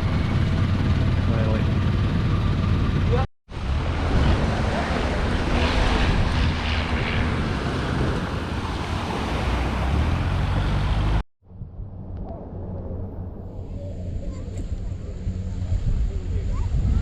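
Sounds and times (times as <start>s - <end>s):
wind: 0.0s - 17.0s
surf: 3.5s - 11.2s.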